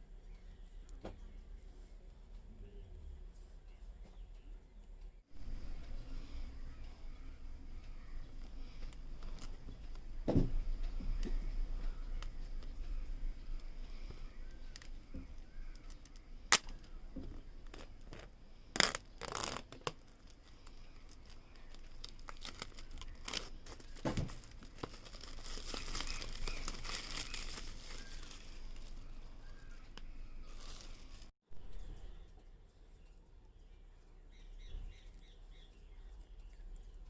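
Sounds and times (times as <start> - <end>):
packaging crinkling and tearing: 9.2 - 9.6, 17.6 - 31.3.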